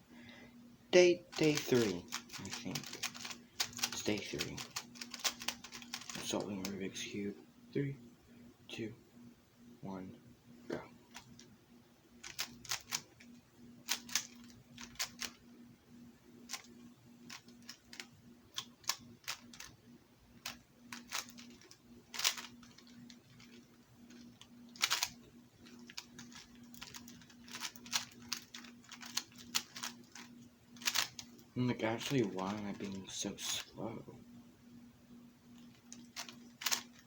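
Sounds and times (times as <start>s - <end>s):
faint steady hum: 0.0s - 37.0s
puzzle cube layers clicking: 1.3s - 6.8s, 20.5s - 31.2s.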